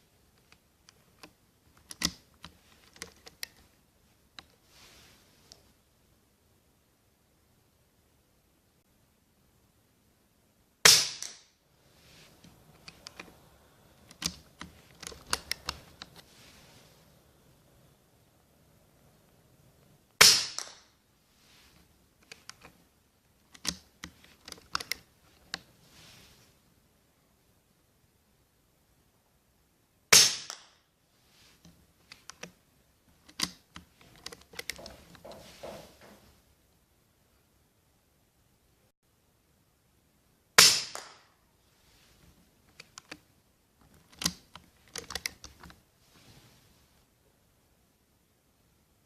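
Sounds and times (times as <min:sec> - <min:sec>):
air rifle shot: 0:10.8 - 0:11.4, 0:20.2 - 0:20.8, 0:30.1 - 0:30.6, 0:40.6 - 0:41.2
quiet mechanical clicks and knocks: 0:31.6 - 0:36.4.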